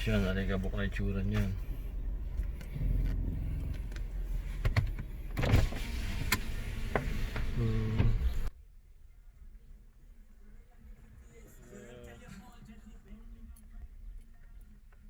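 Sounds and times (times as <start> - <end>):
vehicle engine rumbling: 0.0 - 8.6.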